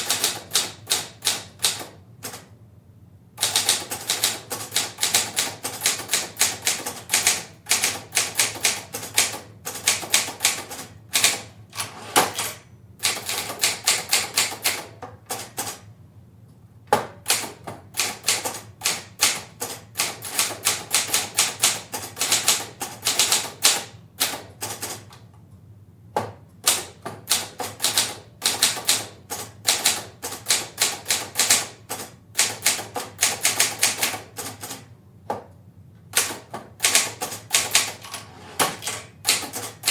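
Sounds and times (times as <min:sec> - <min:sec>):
typewriter key strikes: 0:03.4 - 0:15.8.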